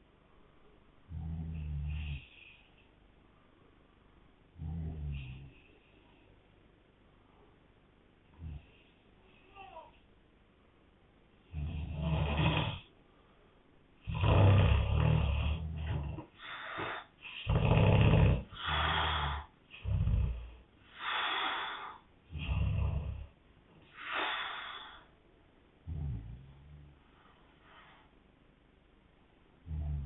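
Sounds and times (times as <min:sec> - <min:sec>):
man snoring: 0:11.5 - 0:12.9, 0:14.1 - 0:20.6, 0:21.4 - 0:23.3, 0:29.7 - 0:30.0.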